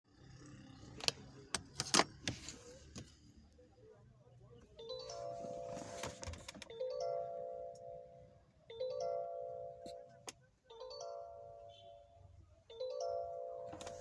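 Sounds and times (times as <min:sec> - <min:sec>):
car electronic warning chime: 0:04.8 - 0:08.1.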